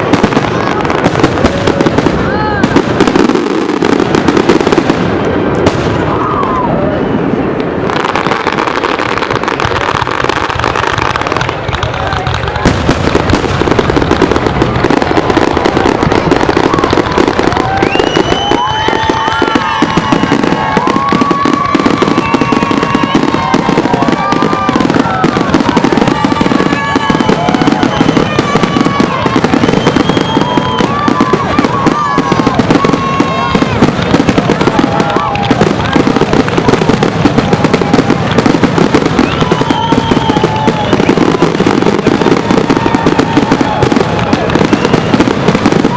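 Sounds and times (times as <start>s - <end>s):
fireworks crackling bursts: 0.0s - 45.9s
sliding whistle-like tones: 17.8s - 19.6s.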